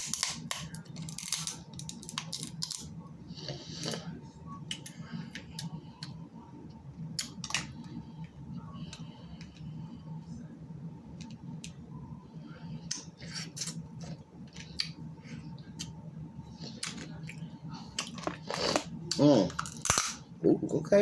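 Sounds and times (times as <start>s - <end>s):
crab shells cracking: 0.0s - 2.9s, 18.0s - 20.2s
low steady hum: 0.0s - 21.0s.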